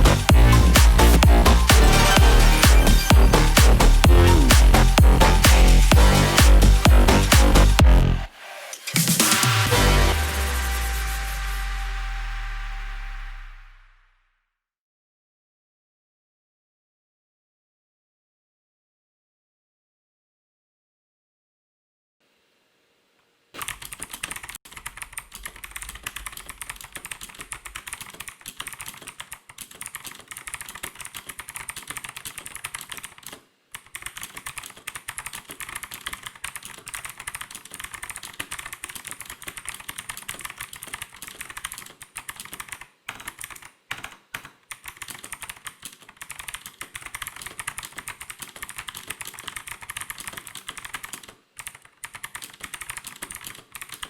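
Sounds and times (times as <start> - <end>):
mechanical keyboard typing: 23.6 - 54.0.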